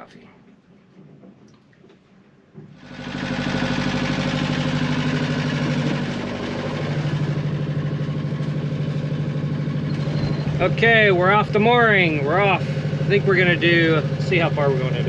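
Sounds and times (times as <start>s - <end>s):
boat engine running: 0.8s - 15.0s.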